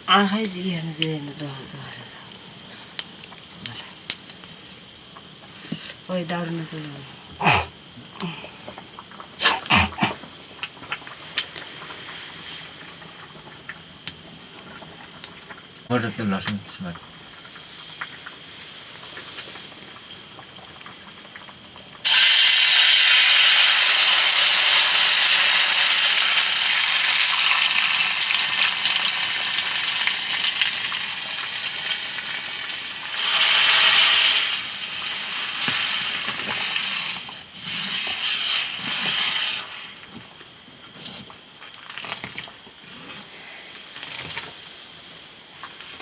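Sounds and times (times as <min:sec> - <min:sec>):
food sizzling in hot oil: 0:15.4 - 0:40.2.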